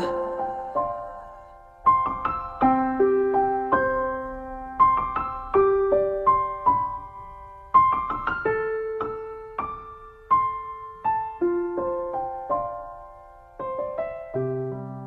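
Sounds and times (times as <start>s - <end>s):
slow soft piano melody: 0.0s - 15.0s.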